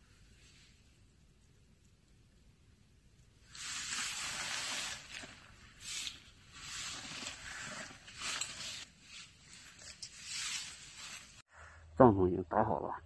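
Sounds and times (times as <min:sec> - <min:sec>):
tent fabric rustling: 0:03.4 - 0:11.5.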